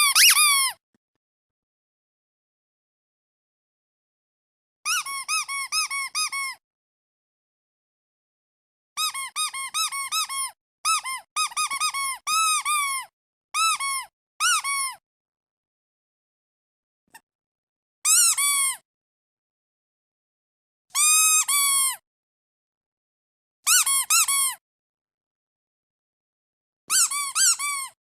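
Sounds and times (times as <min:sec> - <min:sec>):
squeaky duck toy squeaking: 0:00.0 - 0:00.8, 0:04.9 - 0:06.6, 0:09.0 - 0:15.0, 0:18.1 - 0:18.8, 0:20.9 - 0:22.0, 0:23.7 - 0:24.6, 0:26.9 - 0:28.0.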